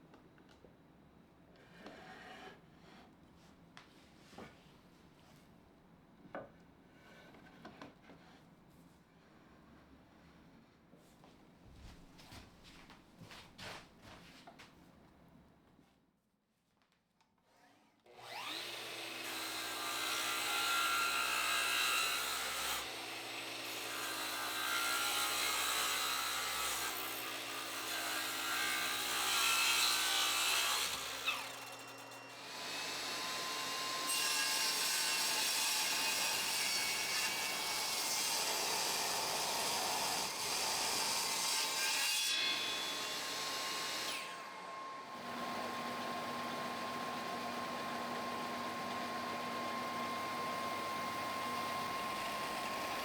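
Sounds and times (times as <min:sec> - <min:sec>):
power tool cutting wood: 0:18.1 - 0:53.0.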